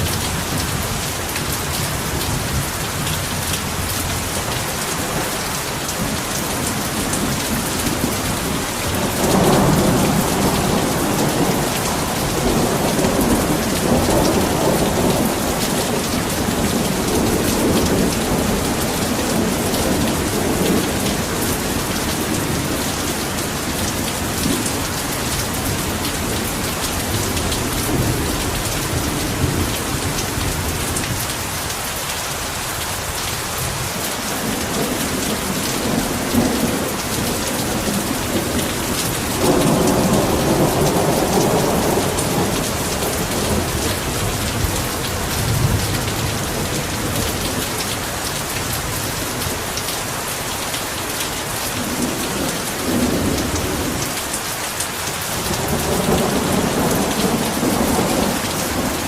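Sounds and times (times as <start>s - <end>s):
heavy rain falling: 0.0s - 59.0s
thunder rumbling: 2.0s - 31.2s, 33.7s - 47.8s.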